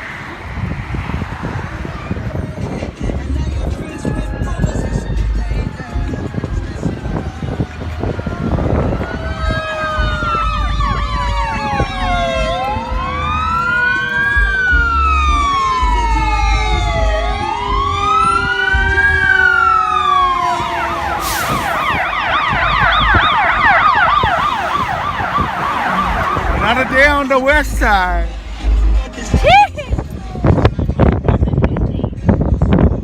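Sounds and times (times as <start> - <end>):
sirens wailing: 0.0 - 29.7
wind rumble on microphone: 0.0 - 33.0
siren yelping: 4.0 - 27.8.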